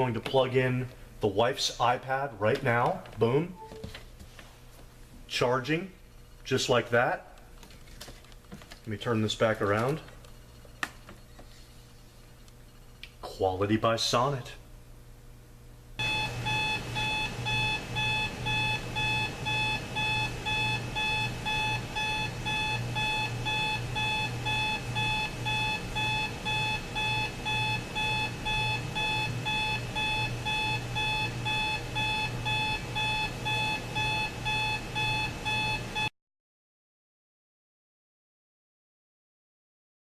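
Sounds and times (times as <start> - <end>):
alarm clock beeping: 16.0 - 36.1.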